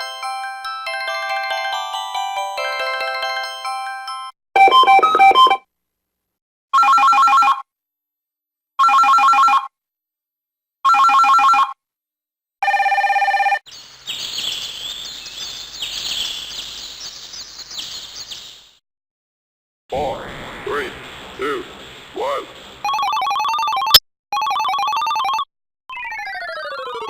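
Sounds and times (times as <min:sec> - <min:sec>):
electronic telephone ringtone: 0:04.6 - 0:05.6, 0:06.8 - 0:07.7, 0:08.8 - 0:09.7, 0:10.9 - 0:11.8, 0:12.6 - 0:13.6, 0:22.9 - 0:27.0
chirping electronic sound effect: 0:25.9 - 0:27.0.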